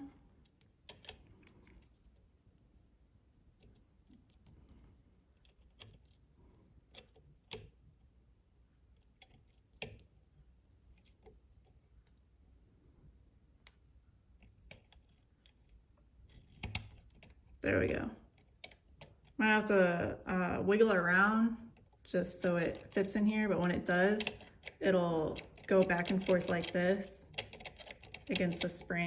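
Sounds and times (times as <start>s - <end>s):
small metal parts clicking: 24.2s - 29.0s.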